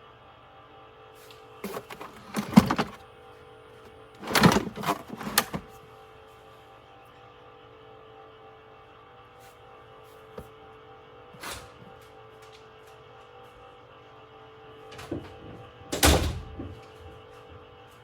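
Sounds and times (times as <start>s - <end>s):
clattering knocks: 1.6s - 3.0s, 4.2s - 5.7s, 15.0s - 17.8s.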